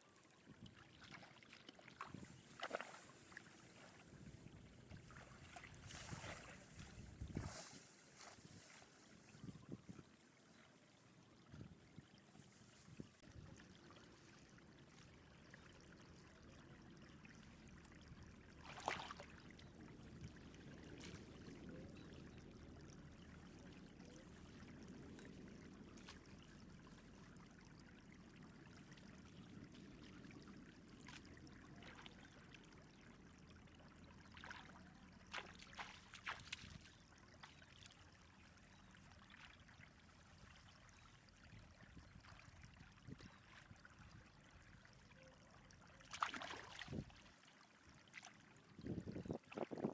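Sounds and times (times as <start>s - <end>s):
water trickling and sloshing: 0.0s - 49.9s
short water splashes: 0.5s - 10.0s, 17.2s - 21.8s, 29.0s - 33.0s, 34.2s - 45.1s, 46.0s - 49.9s.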